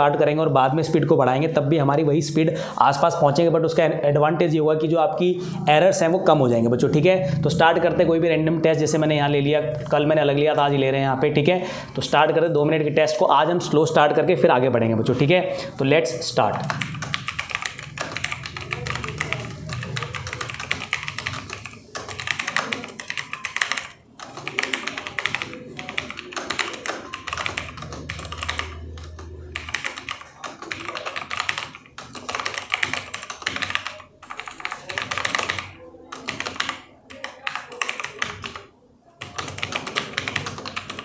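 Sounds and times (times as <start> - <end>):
typing on computer keyboard: 16.6 - 41.0.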